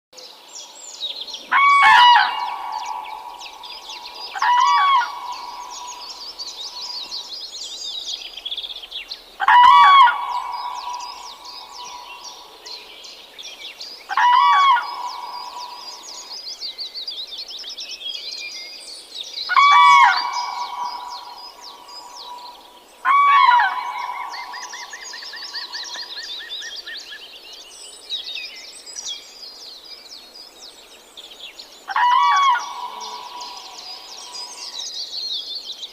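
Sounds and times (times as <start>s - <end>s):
high chirping of birds: 0.2s - 35.9s
hornbills calling: 1.5s - 7.1s, 9.4s - 12.6s, 14.1s - 16.2s, 19.5s - 26.3s, 31.9s - 34.7s.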